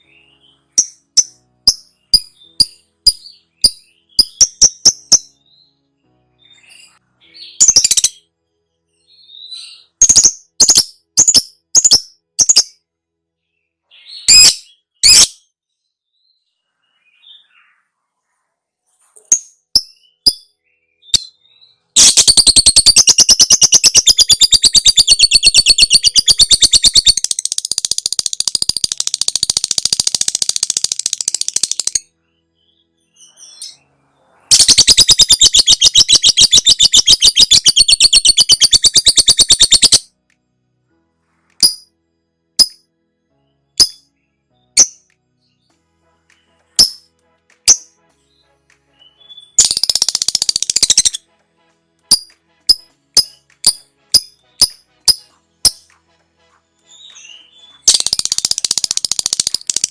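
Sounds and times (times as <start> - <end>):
lovebird sharp high chirps: 0.7 - 5.4, 6.5 - 8.2, 9.2 - 12.8, 14.0 - 15.4, 22.0 - 32.1, 34.5 - 40.1, 41.6 - 41.9, 42.6 - 42.8, 43.8 - 44.0, 44.7 - 45.1, 46.8 - 47.1, 49.1 - 51.2, 52.1 - 55.9, 56.9 - 59.9.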